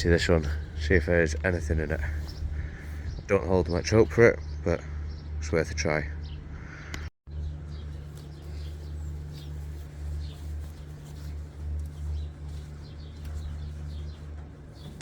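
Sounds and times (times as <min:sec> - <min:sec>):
low rumble: 0:00.0 - 0:03.3
small birds chirping faintly: 0:06.2 - 0:15.0.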